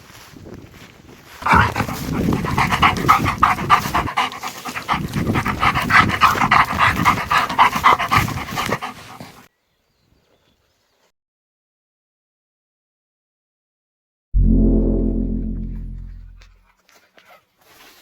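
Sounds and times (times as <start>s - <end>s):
dog panting: 1.4s - 9.5s.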